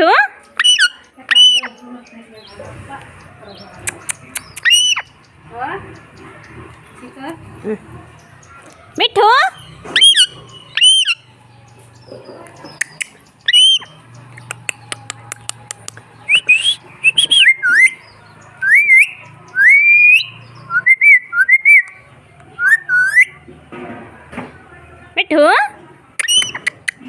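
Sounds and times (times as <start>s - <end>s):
parrot whistled squawks: 0.6s - 1.7s, 10.0s - 11.2s, 22.6s - 23.3s
sharp clicks: 3.8s - 5.3s, 12.4s - 16.8s, 26.2s - 27.0s.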